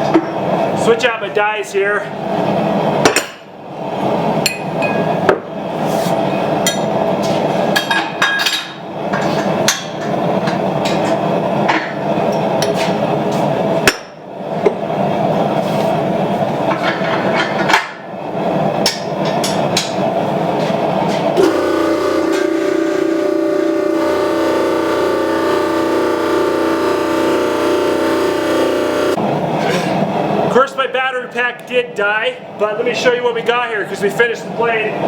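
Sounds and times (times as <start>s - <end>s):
forge roaring: 21.4s - 29.2s.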